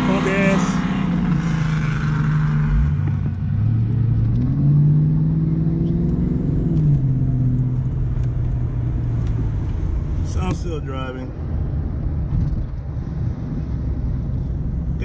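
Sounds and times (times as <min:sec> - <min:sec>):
car engine accelerating: 0:00.0 - 0:10.6.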